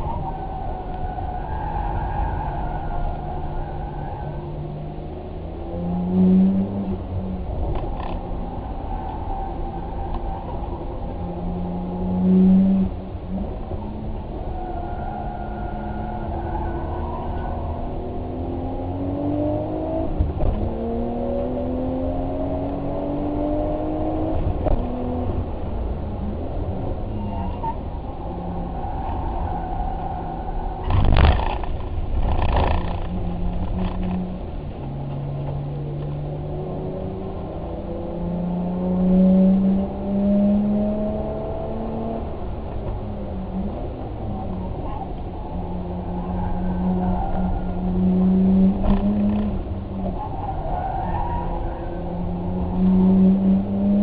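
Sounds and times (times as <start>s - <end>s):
vehicle engine accelerating: 30.8s - 54.0s.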